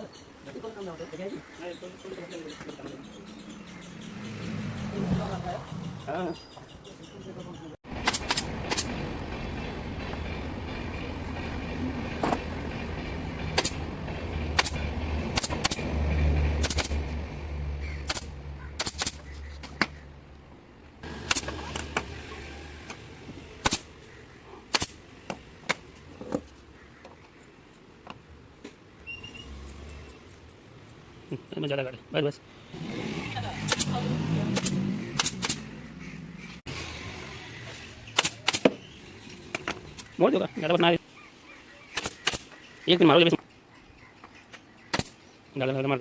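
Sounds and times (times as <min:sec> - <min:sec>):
staple gun firing: 0:14.6 - 0:14.8, 0:16.6 - 0:17.0, 0:18.0 - 0:19.2, 0:21.3 - 0:21.6, 0:23.6 - 0:23.8, 0:24.7 - 0:25.0, 0:34.6 - 0:35.6, 0:38.2 - 0:38.8, 0:42.0 - 0:42.5.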